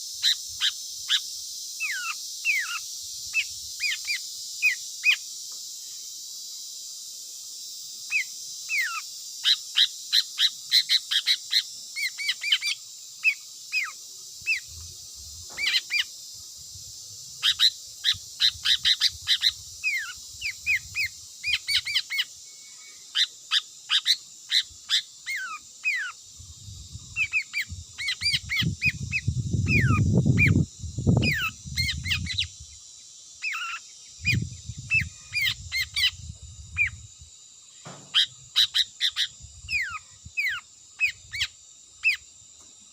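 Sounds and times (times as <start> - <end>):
steady high hiss: 0.0 - 42.9.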